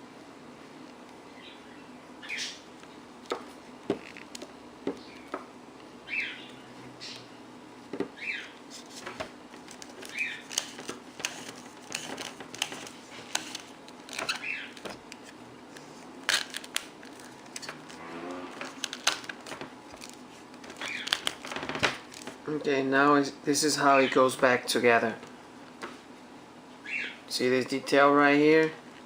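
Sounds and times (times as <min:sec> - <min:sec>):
plastic parts clicking and scraping: 0:08.9 - 0:15.3.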